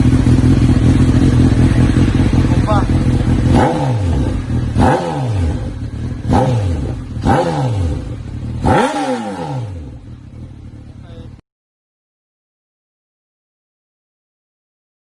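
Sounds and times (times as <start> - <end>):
motorcycle engine revving: 0.0 - 11.4
motorcycle idling: 0.0 - 11.4.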